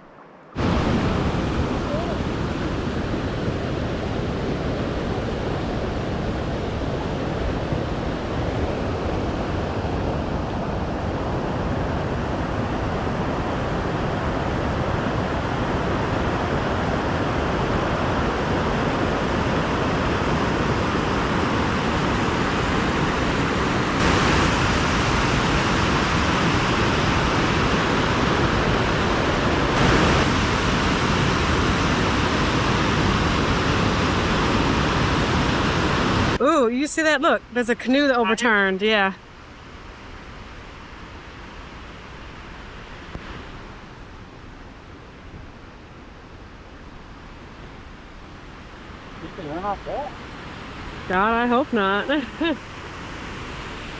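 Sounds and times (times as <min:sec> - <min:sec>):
rushing water hiss: 0:18.9 - 0:36.4.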